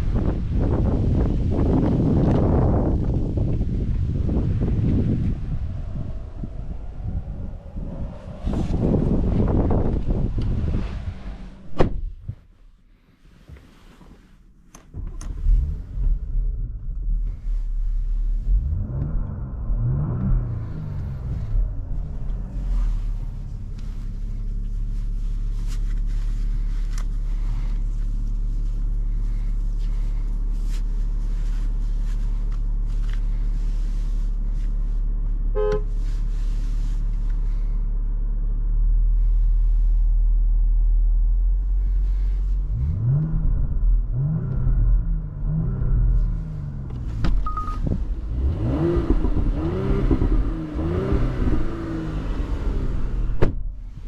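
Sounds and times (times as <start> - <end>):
car engine accelerating: 0.0 - 12.5, 14.9 - 54.0
short beep: 47.4 - 47.9.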